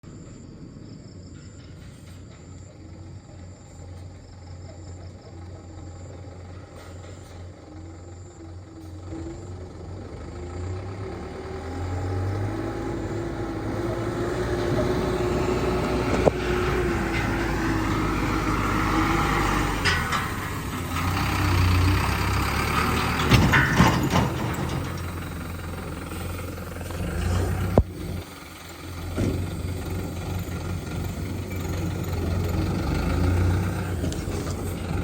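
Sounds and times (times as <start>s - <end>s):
excavator diesel engine whining: 1.6s - 35.0s
metal clunks: 19.6s - 21.4s, 22.2s - 28.0s, 29.0s - 29.8s.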